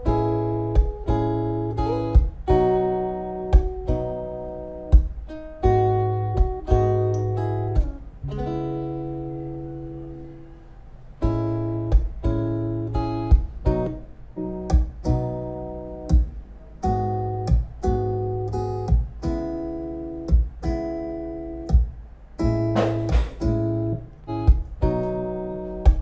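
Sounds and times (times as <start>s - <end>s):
strummed acoustic guitar chords: 0.0s - 10.5s, 11.2s - 26.0s
sharp percussive hits: 22.8s - 23.8s.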